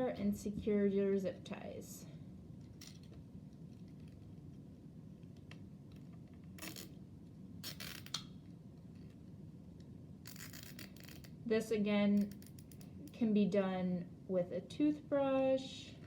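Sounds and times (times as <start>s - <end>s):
zip ties ratcheting: 6.6s - 7.0s, 7.6s - 8.3s, 10.2s - 11.4s, 12.2s - 12.9s.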